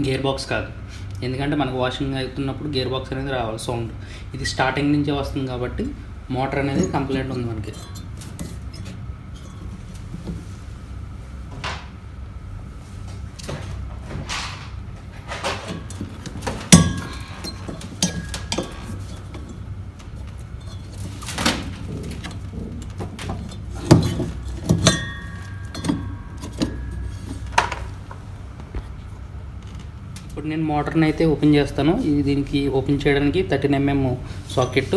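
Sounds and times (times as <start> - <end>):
low steady hum: 0.0 - 34.9
metal tools clinking and knocking: 15.3 - 28.0.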